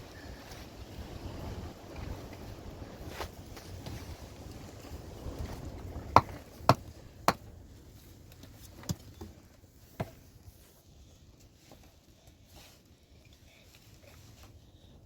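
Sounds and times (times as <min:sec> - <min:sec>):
wind rumbling on microphone: 0:00.0 - 0:08.8.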